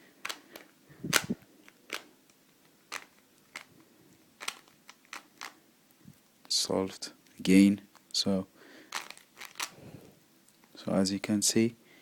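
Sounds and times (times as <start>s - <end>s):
plastic puzzle cube clicking: 0.2s - 2.1s, 2.9s - 3.7s, 4.4s - 5.6s, 8.9s - 9.8s.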